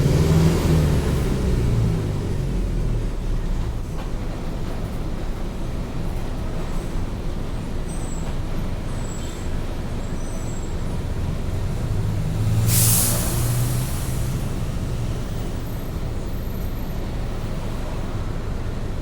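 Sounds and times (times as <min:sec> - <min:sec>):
bus engine low rumble: 0:00.0 - 0:19.0
air brake hiss: 0:12.4 - 0:16.5.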